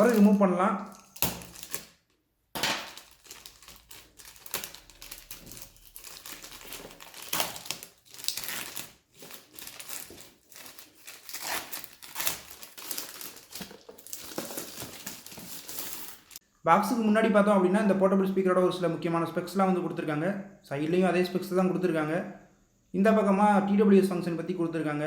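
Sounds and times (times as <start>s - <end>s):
wrapping cover crinkling: 0.0s - 16.4s.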